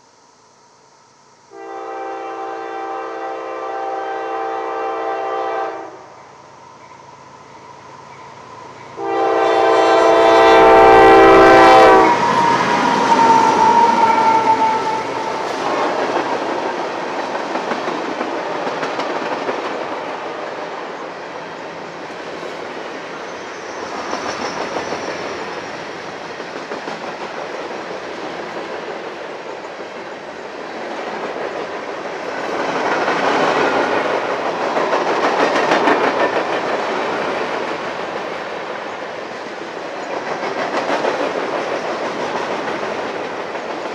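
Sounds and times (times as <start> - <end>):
train horn: 1.5 - 6.1, 9.0 - 16.3
train wheels rumbling and clacking: 6.2 - 43.9.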